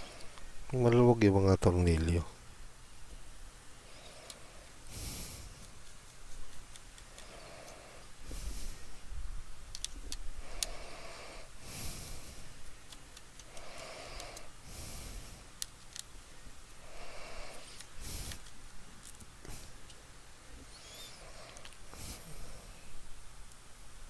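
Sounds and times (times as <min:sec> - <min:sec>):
person breathing: 0:03.8 - 0:05.8, 0:07.0 - 0:09.2, 0:10.3 - 0:12.7, 0:13.4 - 0:15.6, 0:16.2 - 0:18.5, 0:20.5 - 0:23.0
light clicks of small parts: 0:05.6 - 0:07.8, 0:09.7 - 0:10.8, 0:12.6 - 0:14.6, 0:15.5 - 0:16.8, 0:17.5 - 0:20.0.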